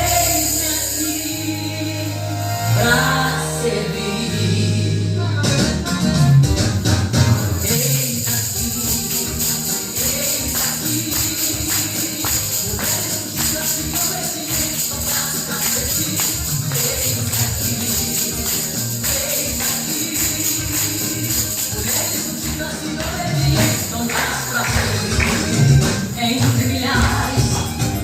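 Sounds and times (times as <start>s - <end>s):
high jingling: 0.0s - 1.6s, 7.5s - 24.9s
band music with steady beat: 0.0s - 28.0s.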